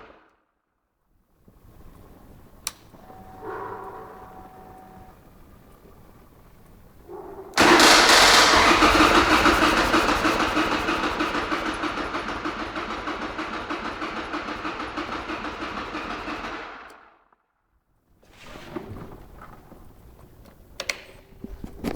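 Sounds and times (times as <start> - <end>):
faint clicks: 1.6 - 8.5
engine cranking without firing: 7.5 - 17.0.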